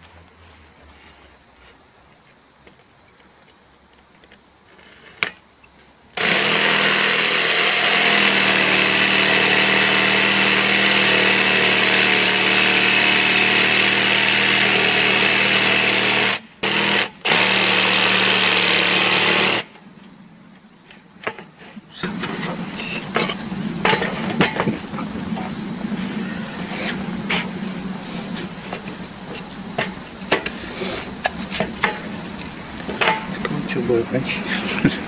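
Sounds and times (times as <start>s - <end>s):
power tool running: 6.2s - 19.8s.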